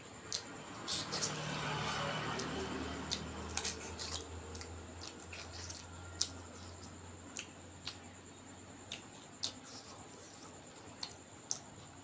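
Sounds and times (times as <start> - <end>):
mouth chewing smacks: 2.3 - 8.1, 8.8 - 11.7.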